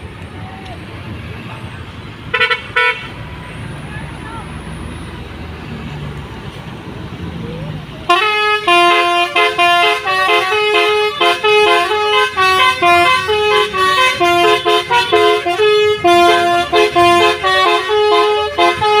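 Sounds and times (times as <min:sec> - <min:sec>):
multi-tone air horn tune: 0:08.1 - 0:19.0.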